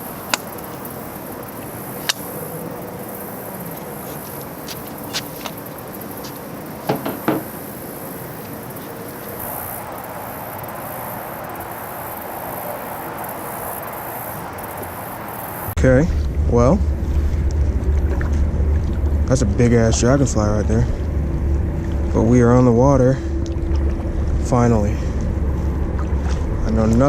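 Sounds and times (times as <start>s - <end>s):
sharp knocks: 6.9s - 7.5s.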